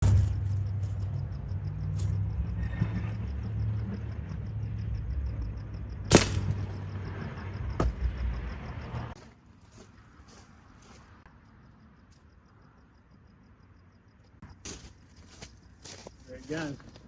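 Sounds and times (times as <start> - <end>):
steady low hum: 0.0 - 9.2
air rifle shot: 6.1 - 6.7.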